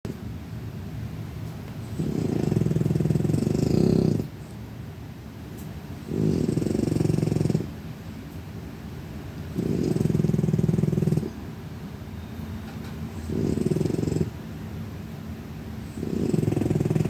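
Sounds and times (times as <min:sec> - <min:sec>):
low rattling snores: 0:01.8 - 0:04.3, 0:06.0 - 0:07.8, 0:09.5 - 0:11.4, 0:13.2 - 0:14.4, 0:15.9 - 0:17.0.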